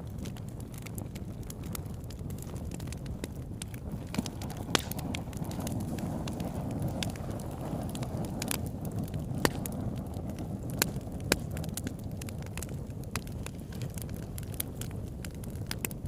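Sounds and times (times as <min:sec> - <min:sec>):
fire burning with crackles: 0:00.0 - 0:16.0.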